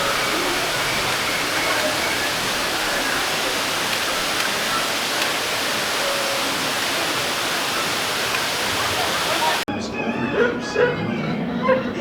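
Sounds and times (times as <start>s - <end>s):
steady rushing noise: 0.0s - 9.6s
faint voices: 0.0s - 12.0s.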